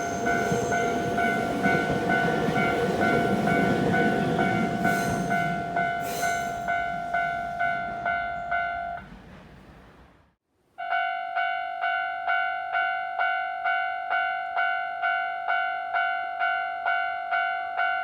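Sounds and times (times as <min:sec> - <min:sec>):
level crossing warning bell ringing: 0:00.0 - 0:09.1, 0:10.8 - 0:18.0
passing train rumble: 0:00.0 - 0:10.4.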